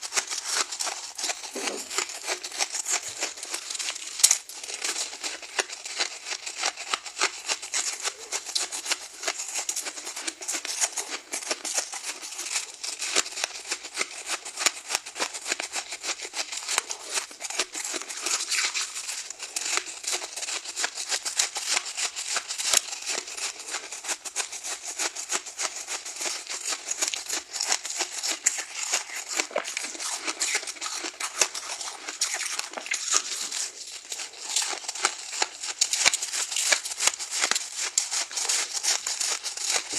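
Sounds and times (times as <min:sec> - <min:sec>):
ice being crunched: 0:27.1 - 0:39.9.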